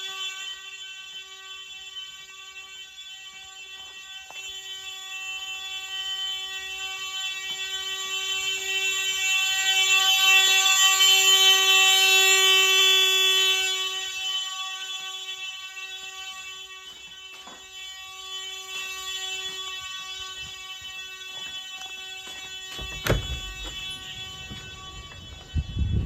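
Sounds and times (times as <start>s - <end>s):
fire alarm buzzing tone: 0.0s - 26.0s.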